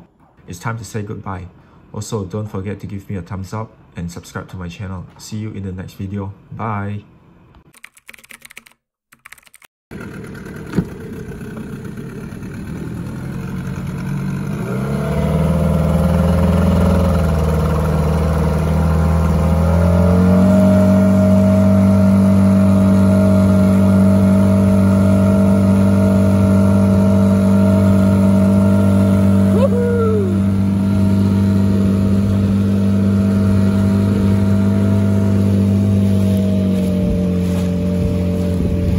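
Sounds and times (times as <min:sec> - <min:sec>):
outboard engine running: 0:09.9 - 0:38.9.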